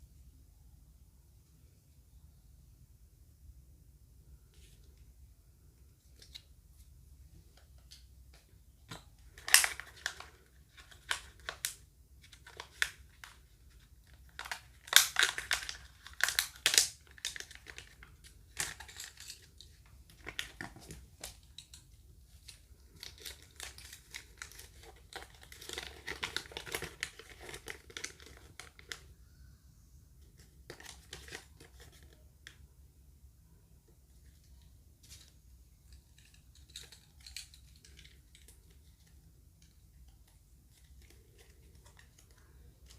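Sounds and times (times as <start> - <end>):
plastic wrapping crinkling and tearing: 9.2 - 21.8, 22.4 - 29.0.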